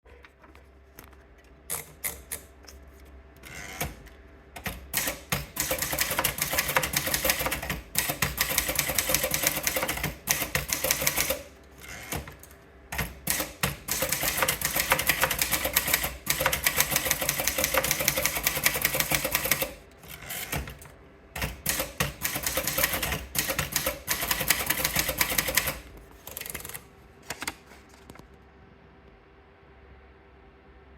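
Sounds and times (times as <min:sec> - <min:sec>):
manual typewriter keystrokes: 0:04.6 - 0:27.6.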